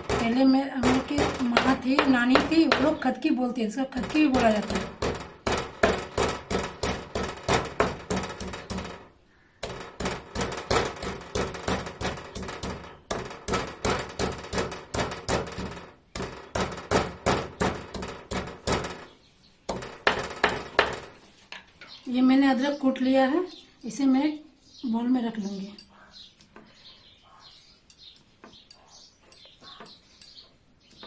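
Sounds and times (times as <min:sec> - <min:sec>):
pestle pounding thuds: 0:00.0 - 0:03.2, 0:03.9 - 0:21.2.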